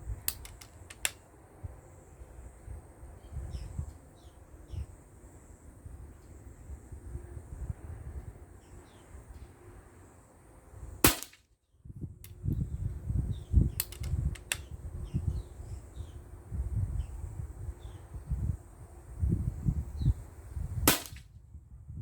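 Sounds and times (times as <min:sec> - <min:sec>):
wind rumbling on microphone: 0:00.0 - 0:09.9, 0:11.7 - 0:22.0
faint bird chirps: 0:03.2 - 0:06.8
air rifle shot: 0:11.0 - 0:11.4, 0:20.8 - 0:21.3.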